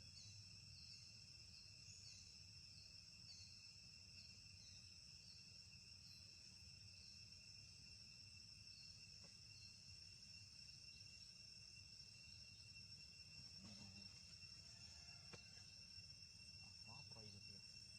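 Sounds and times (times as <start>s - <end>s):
insect trilling: 8.7s - 17.9s.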